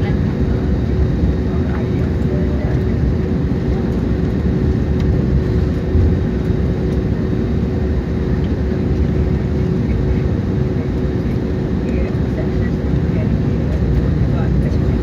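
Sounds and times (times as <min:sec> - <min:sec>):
airliner cabin rumble: 0:00.0 - 0:15.0.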